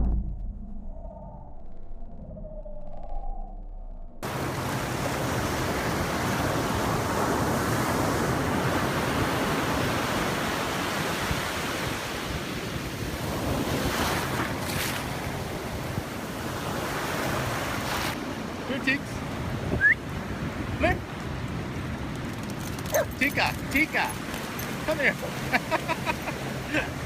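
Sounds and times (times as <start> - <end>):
ocean surf breaking: 4.2 - 22.0, 23.2 - 27.0.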